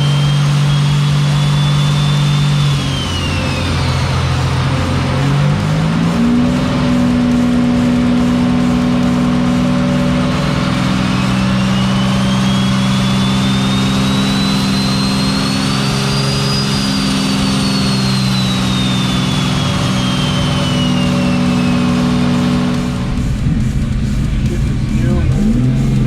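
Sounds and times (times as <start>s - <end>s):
engine low drone: 0.0s - 26.0s
turbo engine whine: 0.0s - 26.0s.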